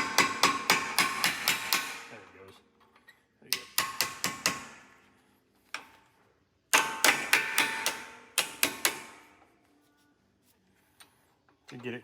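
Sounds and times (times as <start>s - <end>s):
hammer tapping metal punch: 0.0s - 2.0s, 3.5s - 4.8s, 6.7s - 9.2s.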